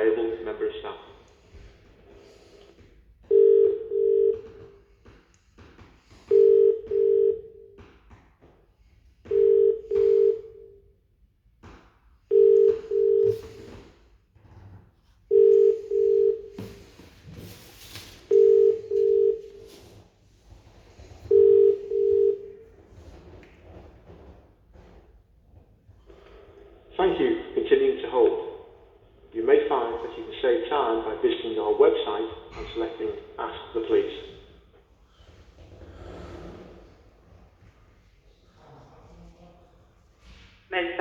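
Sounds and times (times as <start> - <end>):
telephone ringing tone: 3.3 - 4.8, 6.3 - 7.8, 9.3 - 10.8, 12.3 - 13.6, 15.3 - 16.8, 18.3 - 19.7, 21.3 - 22.7.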